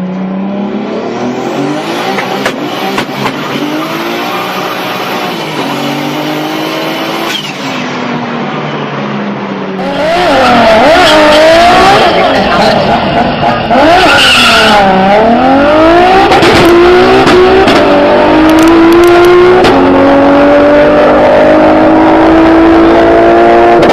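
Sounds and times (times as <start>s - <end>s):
car engine accelerating: 0.0s - 23.9s
tyre squeal: 7.2s - 7.9s, 11.9s - 15.0s.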